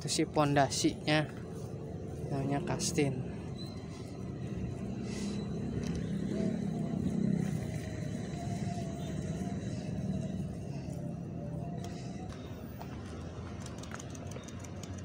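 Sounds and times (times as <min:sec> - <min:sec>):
vehicle engine rumbling: 0:00.0 - 0:15.0.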